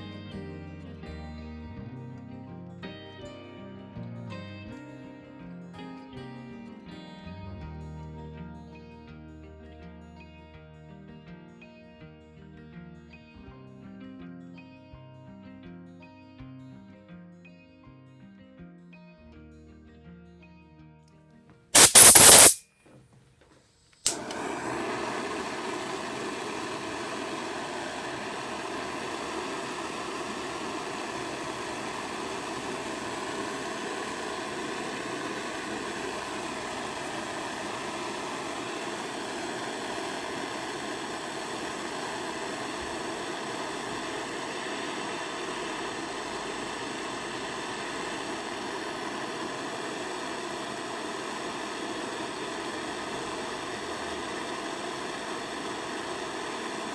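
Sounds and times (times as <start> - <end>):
gas torch roaring: 21.8 - 22.6, 24.0 - 56.9.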